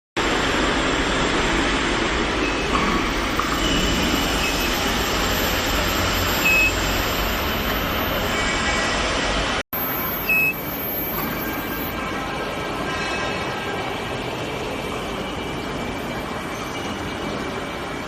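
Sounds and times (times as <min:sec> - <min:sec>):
industrial machinery din: 0:00.2 - 0:12.2
short high-pitched beeps: 0:03.6 - 0:08.4, 0:09.8 - 0:12.0.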